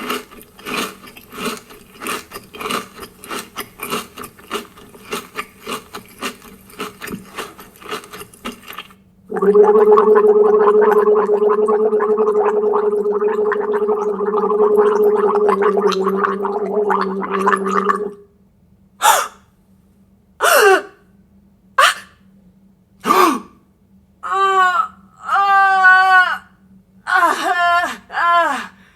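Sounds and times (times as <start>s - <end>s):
person gargling while humming: 9.3s - 18.2s
short falling vocal sounds: 9.3s - 18.2s.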